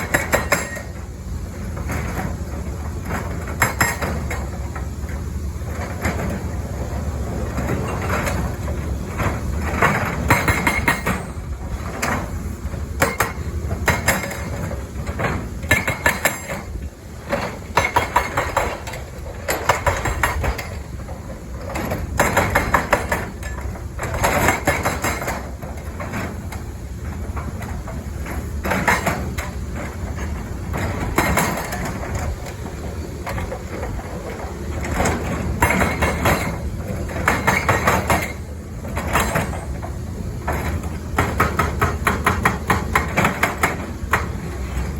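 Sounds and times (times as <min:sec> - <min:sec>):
hydraulic breaker hammering: 0:00.0 - 0:01.0, 0:03.0 - 0:05.0, 0:07.6 - 0:12.3, 0:12.9 - 0:26.4, 0:27.4 - 0:32.6, 0:33.2 - 0:44.5
diesel engine rumble: 0:00.0 - 0:44.9.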